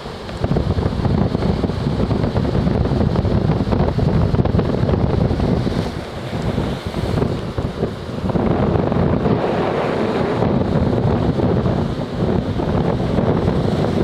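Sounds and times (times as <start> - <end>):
surf breaking on beach: 0.0 - 14.0
wind buffeting microphone: 0.0 - 14.0.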